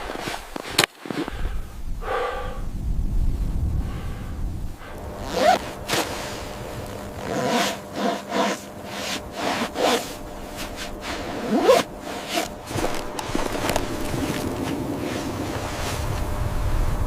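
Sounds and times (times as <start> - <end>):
zipper being pulled: 4.8 - 16.2
fabric rustling: 5.1 - 16.4.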